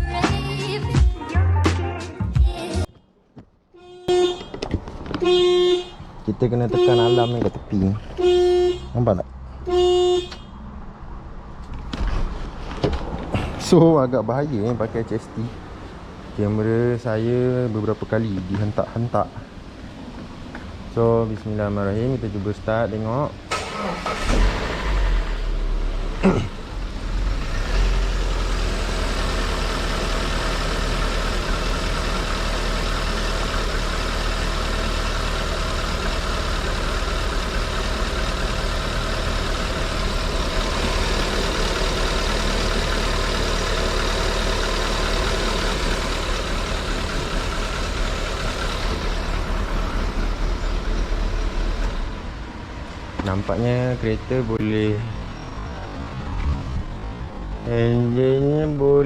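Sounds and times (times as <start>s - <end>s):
car engine starting and idling: 4.1s - 59.0s
engine knock: 28.7s - 51.1s.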